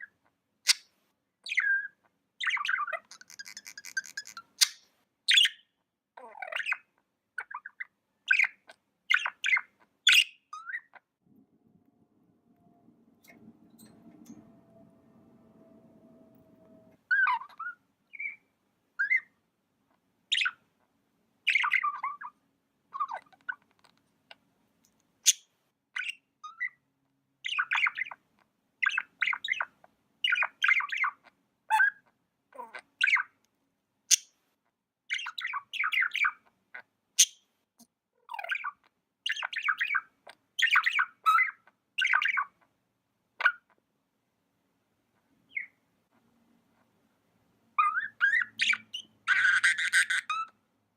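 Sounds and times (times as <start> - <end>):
budgie chirping: 2.4 - 5.6, 47.8 - 50.6.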